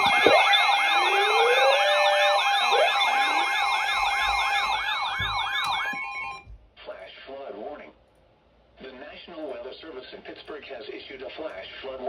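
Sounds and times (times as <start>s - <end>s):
electronic siren yelp sweeps: 0.0s - 6.4s
steady tone: 0.0s - 6.4s.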